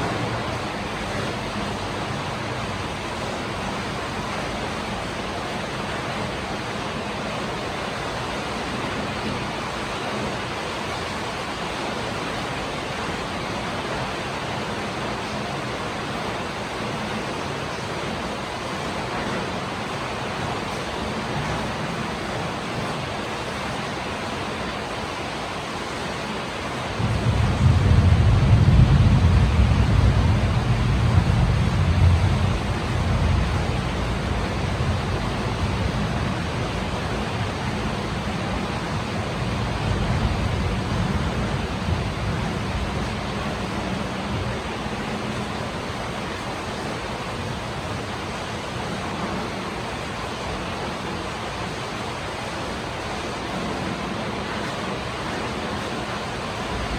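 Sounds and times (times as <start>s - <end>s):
rain falling: 0.0s - 56.9s
low rumble: 27.0s - 43.5s.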